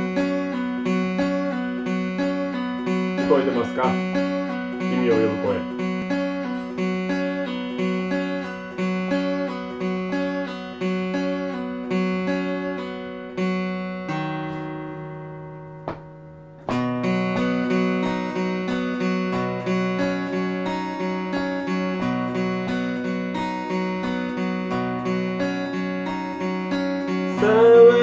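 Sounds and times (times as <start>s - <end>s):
acoustic guitar strumming chords: 0.0s - 28.0s
brief tap: 15.8s - 16.8s.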